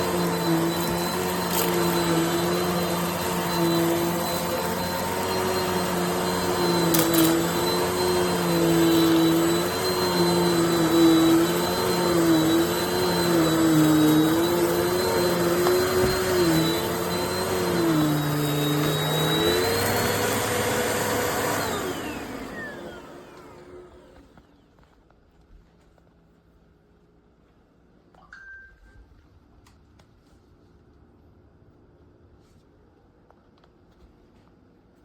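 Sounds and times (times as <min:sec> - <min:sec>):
vacuum cleaner motor whining: 0:00.0 - 0:25.0.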